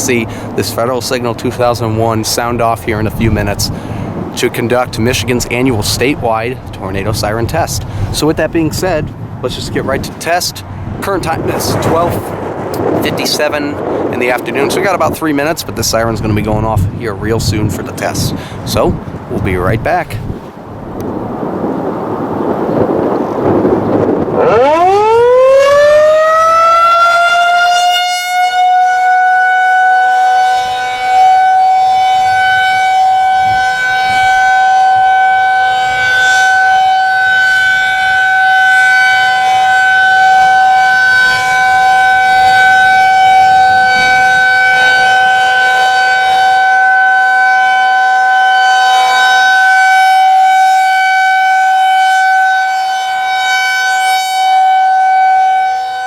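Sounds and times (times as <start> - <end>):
tornado siren winding up: 20.9 - 56.0.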